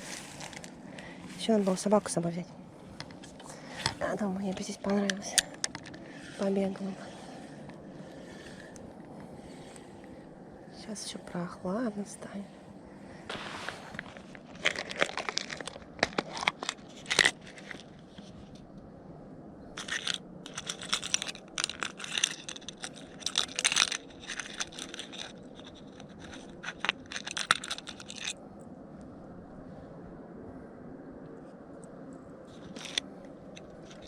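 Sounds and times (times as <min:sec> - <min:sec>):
close crunching and scraping: 0:00.0 - 0:02.2, 0:02.8 - 0:10.1, 0:13.2 - 0:18.7, 0:19.8 - 0:28.4, 0:32.5 - 0:34.0.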